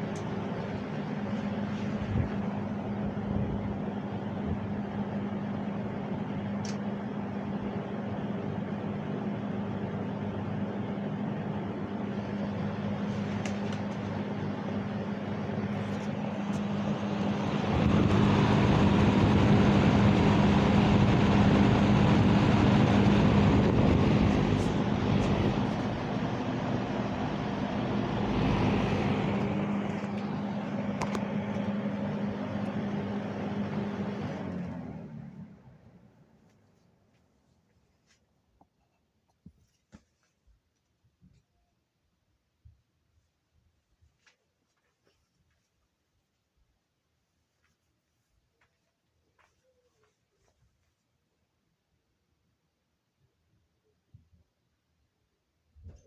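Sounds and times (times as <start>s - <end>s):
box fan running: 0.0s - 38.2s.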